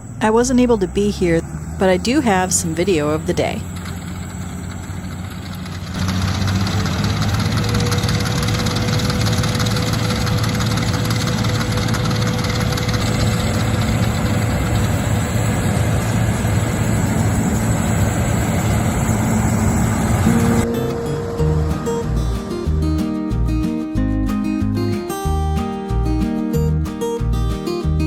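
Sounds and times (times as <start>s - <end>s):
thin steady whine: 0.0s - 5.9s, 7.4s - 22.8s
combine harvester engine drone: 0.0s - 23.8s.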